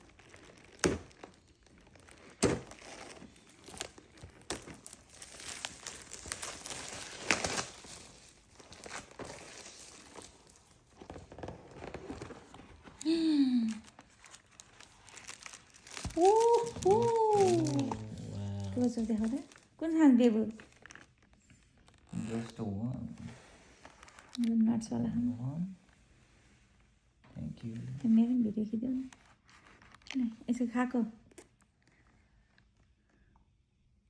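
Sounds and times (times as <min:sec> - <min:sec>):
wrappers crinkling and tearing: 0:00.0 - 0:24.5, 0:29.1 - 0:30.4.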